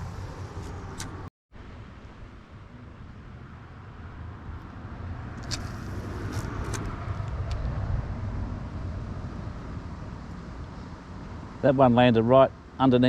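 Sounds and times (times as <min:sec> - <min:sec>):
wind buffeting microphone: 0:02.2 - 0:12.1.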